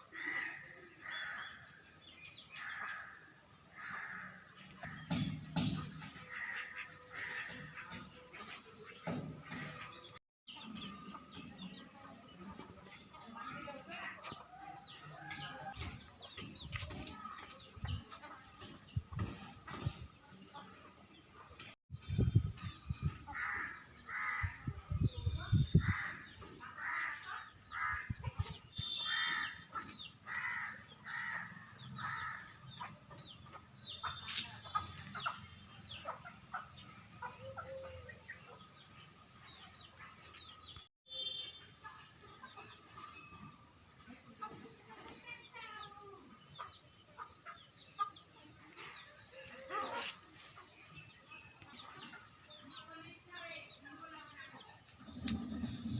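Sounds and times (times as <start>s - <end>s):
chickens clucking: 4.7s - 13.2s, 29.5s - 30.2s, 32.5s - 40.8s, 46.4s - 52.7s.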